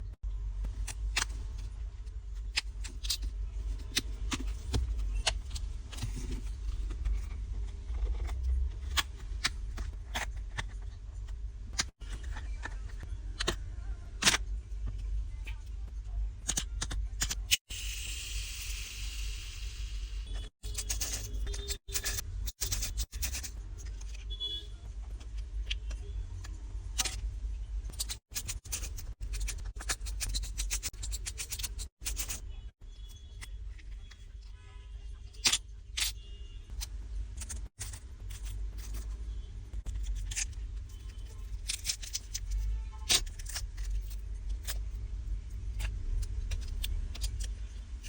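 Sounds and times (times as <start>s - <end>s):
small metal tools clicking and scraping: 2.3s - 13.6s, 20.3s - 27.3s, 27.9s - 39.2s, 39.8s - 45.0s, 45.6s - 48.0s.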